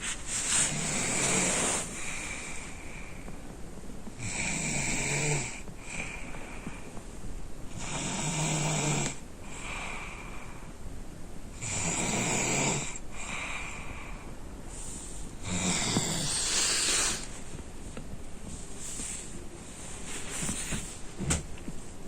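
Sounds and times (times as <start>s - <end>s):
soft breaths: 0.0s - 4.3s, 5.5s - 8.0s, 9.1s - 11.0s, 12.9s - 22.0s
boy snoring: 0.6s - 3.0s, 4.2s - 6.6s, 7.8s - 10.4s, 11.6s - 14.1s, 15.4s - 17.3s.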